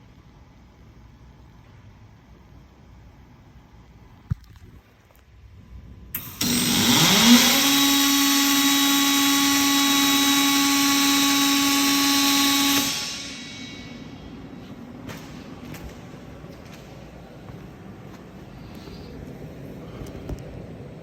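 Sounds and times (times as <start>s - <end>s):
power tool motor whining: 6.2s - 13.9s.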